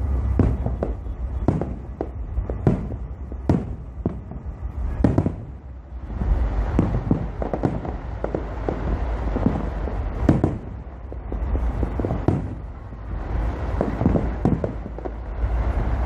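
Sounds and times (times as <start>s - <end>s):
fireworks bangs: 0.0s - 16.0s
low rumble: 0.0s - 16.0s.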